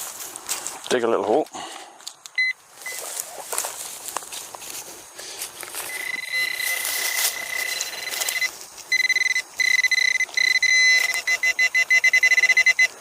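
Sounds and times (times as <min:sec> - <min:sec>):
metal detector tone: 0:02.4 - 0:03.0, 0:05.9 - 0:13.0.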